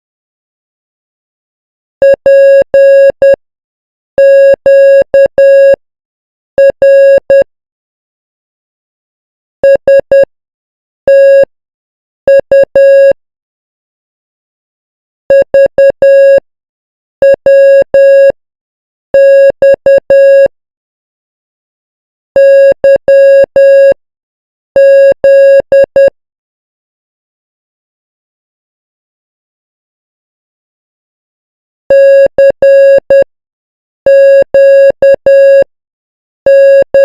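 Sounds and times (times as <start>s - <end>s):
morse code beeps: 2.0s - 3.4s, 4.2s - 5.8s, 6.6s - 7.4s, 9.6s - 10.3s, 12.3s - 13.2s, 15.3s - 16.4s, 17.2s - 18.3s, 19.2s - 20.5s, 22.4s - 24.0s, 24.8s - 26.1s, 31.9s - 33.2s, 34.1s - 35.7s, 36.5s - 37.0s.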